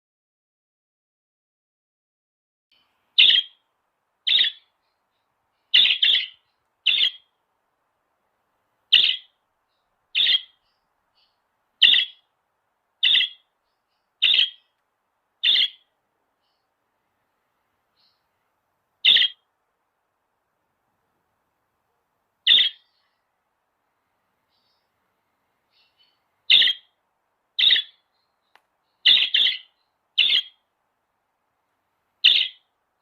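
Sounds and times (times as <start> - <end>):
lovebird high-pitched chirps: 2.7 - 3.6, 4.2 - 7.3, 8.9 - 12.3, 13.0 - 14.8, 15.4 - 16.7, 18.0 - 18.2, 19.0 - 19.5, 22.4 - 23.3, 24.5 - 24.9, 25.7 - 27.0, 27.6 - 30.7, 32.2 - 32.7.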